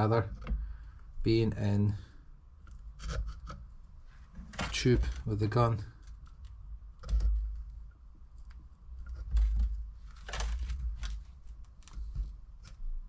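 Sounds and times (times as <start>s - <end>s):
scratchy rubs: 2.9s - 5.4s.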